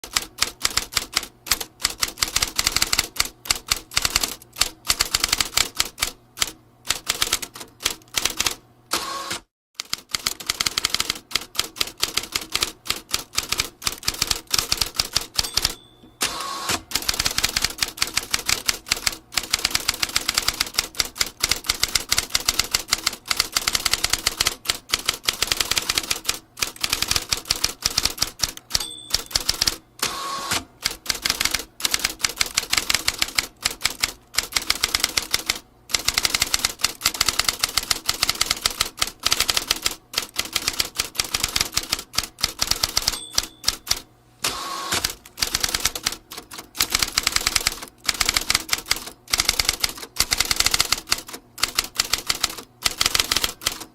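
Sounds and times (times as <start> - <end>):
typewriter key strikes: 9.8 - 29.8, 30.8 - 44.0, 45.0 - 53.9
typewriter bell ring: 14.9 - 17.6, 28.7 - 30.2, 42.5 - 44.0.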